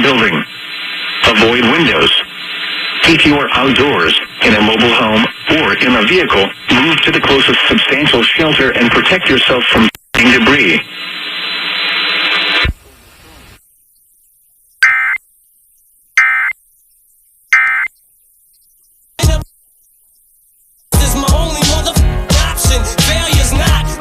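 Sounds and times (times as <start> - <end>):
screeching data bursts: 12.9 - 21.0
harsh buzzing alert tone: 14.8 - 15.2, 16.2 - 16.6, 17.5 - 18.0
pop music: 19.2 - 19.4, 20.9 - 24.0.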